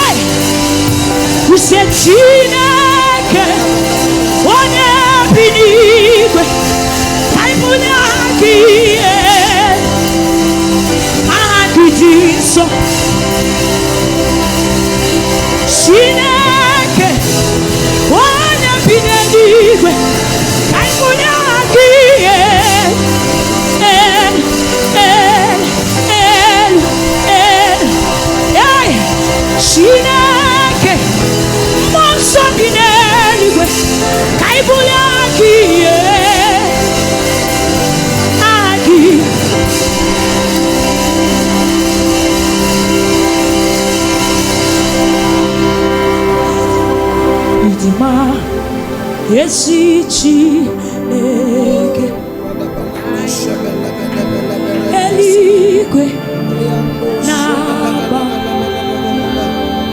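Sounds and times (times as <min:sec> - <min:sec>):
woman singing with vibrato: 0:00.0 - 0:53.5, 0:54.7 - 0:59.9
instrumental accompaniment: 0:00.0 - 0:59.9.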